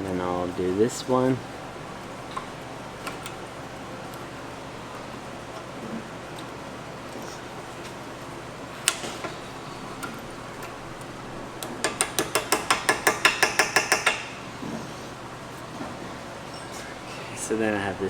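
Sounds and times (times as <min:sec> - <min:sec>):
hammer tapping metal: 0:11.7 - 0:14.4.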